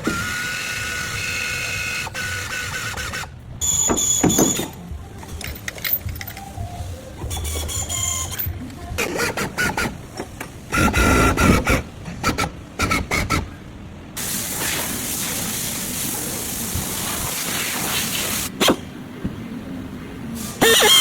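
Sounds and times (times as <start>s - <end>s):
bodywork tools knocking and clattering: 3.8s - 6.5s
compressed air hiss: 14.2s - 18.8s.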